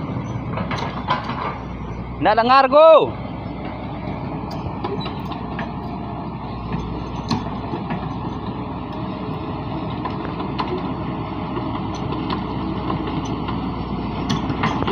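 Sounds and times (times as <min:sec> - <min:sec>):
diesel engine running: 0:00.0 - 0:14.9
sharp clicks and knocks: 0:00.5 - 0:01.7, 0:06.7 - 0:09.1, 0:14.2 - 0:14.9.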